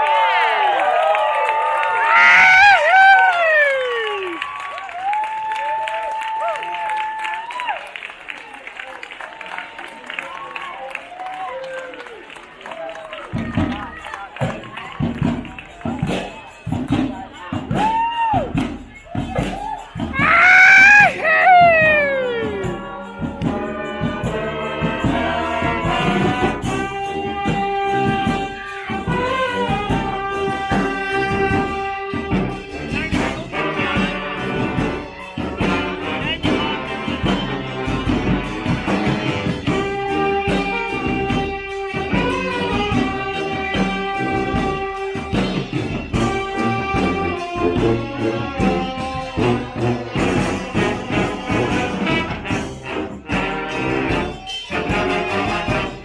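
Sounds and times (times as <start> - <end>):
brass band playing: 2.0 - 4.9, 13.9 - 56.0
steady drum beat: 13.4 - 56.0.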